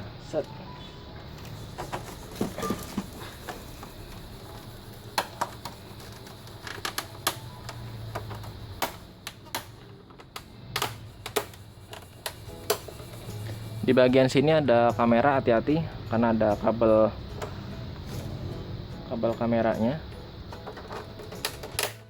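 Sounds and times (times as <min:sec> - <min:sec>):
plastic covers clicking: 0:05.2 - 0:13.1, 0:20.5 - 0:22.0.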